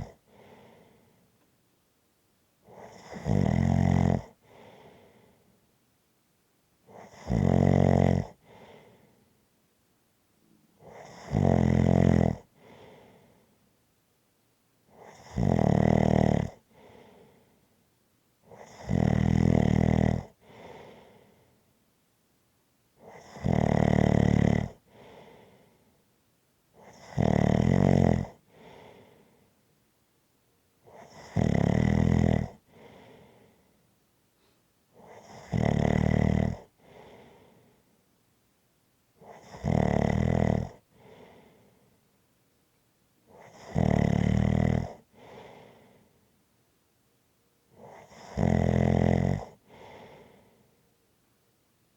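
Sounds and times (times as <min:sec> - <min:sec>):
loud snoring: 0:00.0 - 0:00.2, 0:02.7 - 0:04.4, 0:06.9 - 0:08.7, 0:10.8 - 0:12.5, 0:14.9 - 0:16.9, 0:18.5 - 0:20.9, 0:23.0 - 0:25.3, 0:26.8 - 0:29.1, 0:30.9 - 0:33.1, 0:35.0 - 0:37.3, 0:39.2 - 0:41.4, 0:43.3 - 0:45.6, 0:47.8 - 0:50.2
quiet breath: 0:00.0 - 0:02.0, 0:04.2 - 0:06.0, 0:08.2 - 0:09.8, 0:12.3 - 0:14.1, 0:16.5 - 0:18.8, 0:20.2 - 0:22.2, 0:24.7 - 0:27.2, 0:28.2 - 0:31.3, 0:32.4 - 0:35.5, 0:36.4 - 0:39.6, 0:40.6 - 0:43.8, 0:44.8 - 0:46.8, 0:47.4 - 0:48.4, 0:49.3 - 0:51.9.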